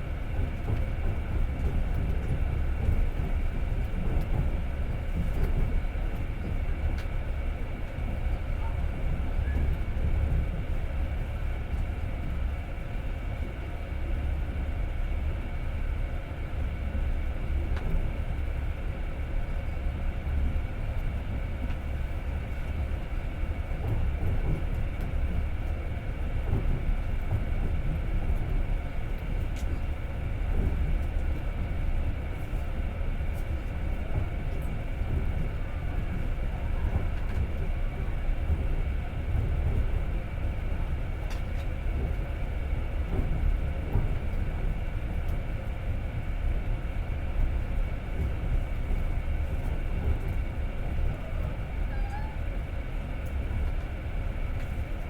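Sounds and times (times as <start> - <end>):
train wheels rumbling on rails: 0.0 - 55.0.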